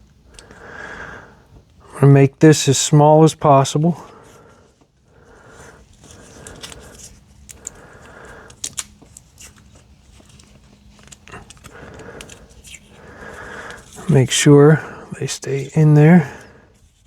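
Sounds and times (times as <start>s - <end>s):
faint steady hum: 0.0s - 17.0s
crackles and clicks of handling: 4.1s - 14.2s.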